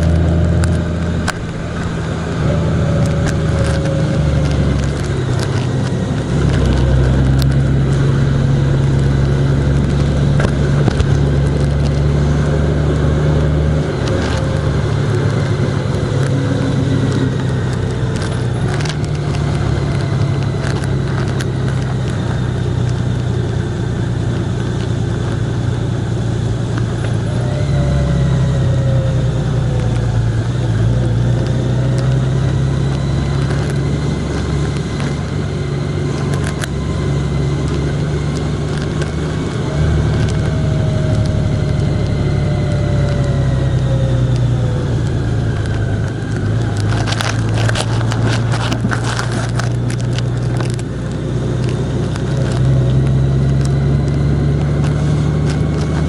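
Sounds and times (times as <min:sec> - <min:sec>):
vehicle engine driving: 0:00.0 - 0:56.0.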